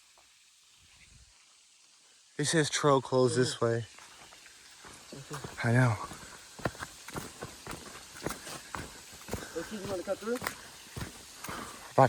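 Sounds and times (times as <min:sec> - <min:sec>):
footsteps on trail: 0:03.9 - 0:12.0.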